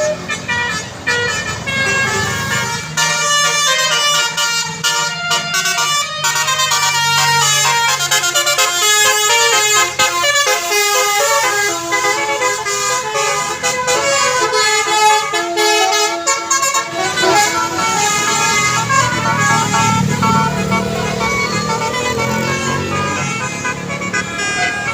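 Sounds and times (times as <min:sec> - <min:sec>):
multi-tone air horn melody: 0:00.0 - 0:24.9
low engine rumble: 0:05.3 - 0:24.9.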